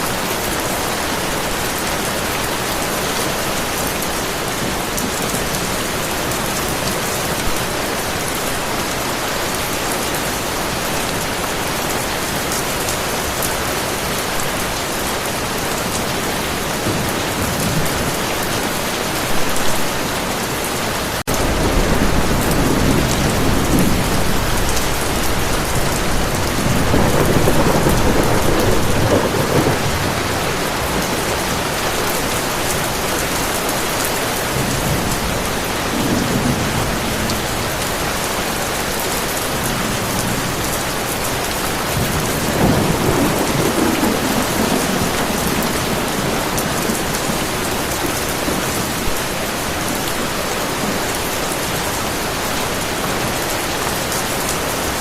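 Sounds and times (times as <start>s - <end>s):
heavy rain: 0.0s - 55.0s
thunder rumbling: 21.2s - 38.6s, 39.5s - 53.5s.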